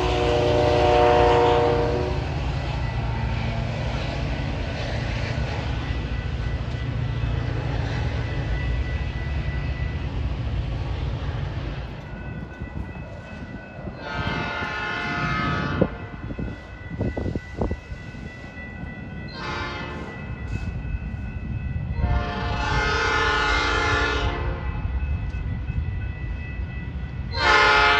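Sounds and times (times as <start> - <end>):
locomotive air horn: 0.0 - 2.2, 14.0 - 16.2, 19.3 - 20.1, 22.0 - 24.6, 27.4 - 27.9
train rumble: 0.0 - 27.9.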